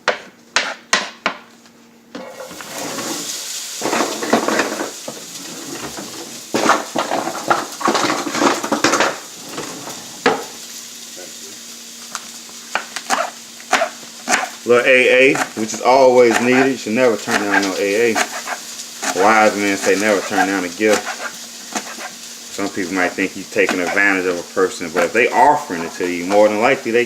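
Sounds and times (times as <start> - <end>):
utensil scraping a pan: 2.2 - 10.2, 13.0 - 14.6, 15.2 - 26.6
onions sizzling in hot oil: 2.2 - 27.0.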